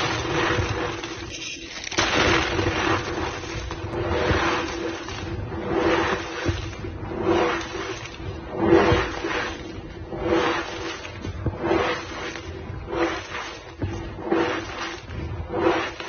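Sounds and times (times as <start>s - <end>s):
chalk powder squeaky crunching: 0.0s - 3.8s.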